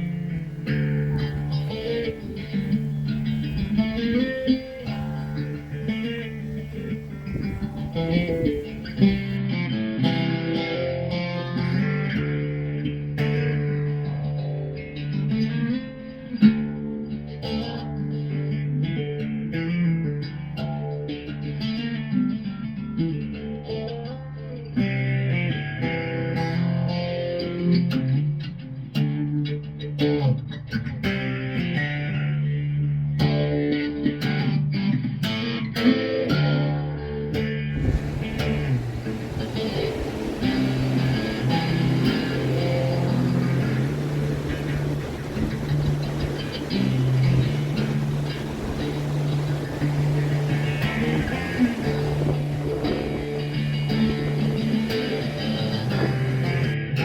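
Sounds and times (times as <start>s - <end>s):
plucked guitar music: 0.0s - 57.0s
steady bass line: 37.7s - 57.0s.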